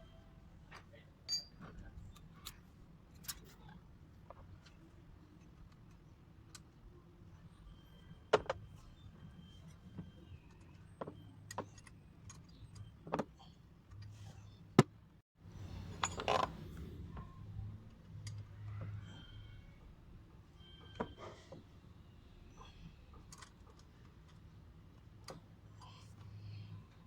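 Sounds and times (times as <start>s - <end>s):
tools rattling clatter: 15.7s - 16.7s
metal tools clicking on engine: 15.8s - 19.5s.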